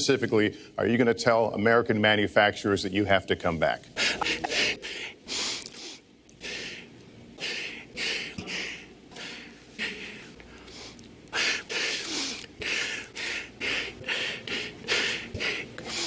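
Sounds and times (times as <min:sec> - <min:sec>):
man sniffing: 0:04.0 - 0:04.7.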